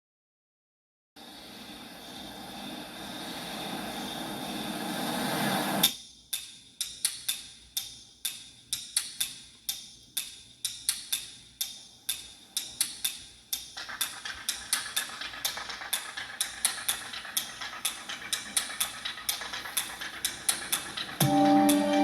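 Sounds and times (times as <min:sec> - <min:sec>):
percussive beat: 0:13.6 - 0:22.0.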